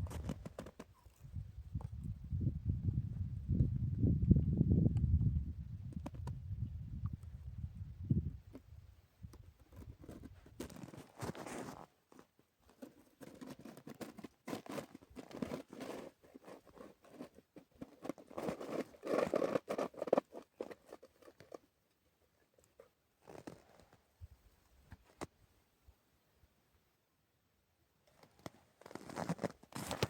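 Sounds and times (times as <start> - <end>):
crunching and scraping: 0.0 - 1.2, 9.3 - 21.7, 28.1 - 30.0.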